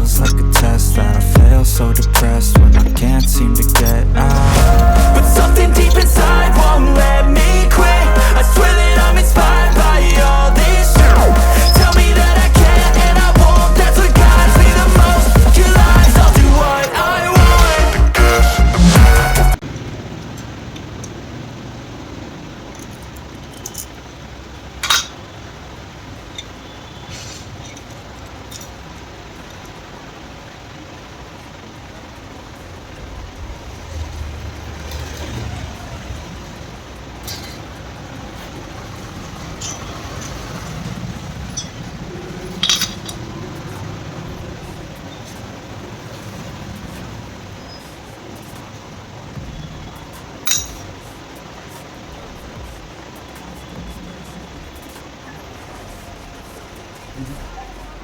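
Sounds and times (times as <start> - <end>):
sharp metallic clicks: 0.0 - 17.0
low steady background noise: 19.5 - 58.0
metal tools clinking: 22.7 - 24.2, 24.8 - 25.2, 27.5 - 28.8, 37.2 - 37.8, 39.4 - 40.5, 41.4 - 44.0, 50.4 - 51.1.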